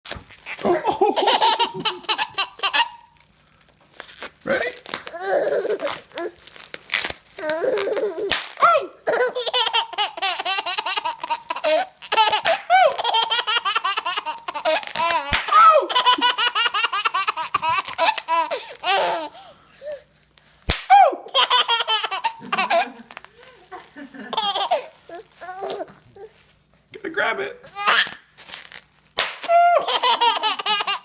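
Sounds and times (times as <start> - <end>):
bubble wrap popping: 0.1 - 8.8, 10.4 - 19.0, 22.4 - 26.6, 27.7 - 29.8
baby laughing: 0.5 - 3.2, 5.1 - 6.4, 7.4 - 19.5, 21.2 - 26.3, 27.7 - 28.2, 29.4 - 31.0.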